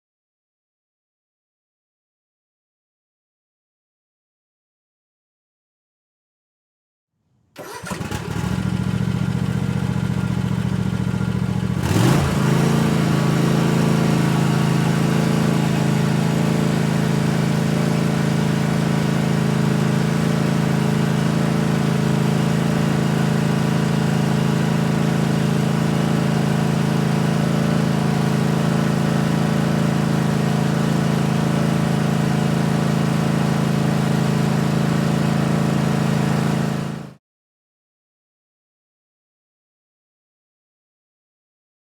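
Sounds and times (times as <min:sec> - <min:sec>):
lawn mower engine idling: 0:07.6 - 0:37.1.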